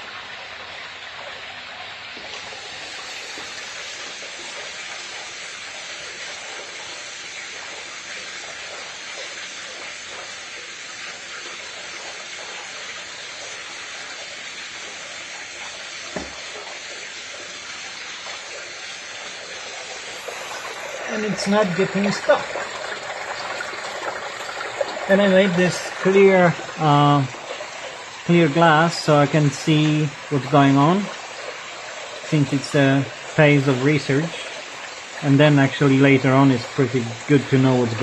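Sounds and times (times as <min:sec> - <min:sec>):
coolant water rushing: 0:00.0 - 0:38.0
single knock: 0:16.1 - 0:16.4.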